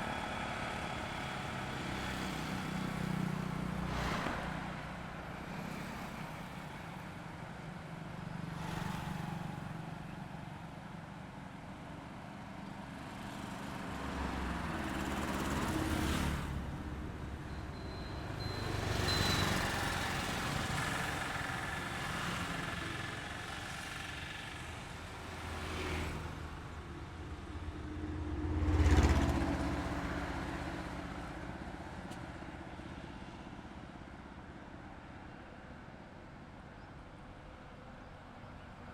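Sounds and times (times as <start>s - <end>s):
vehicles passing on highway: 0.0s - 38.9s.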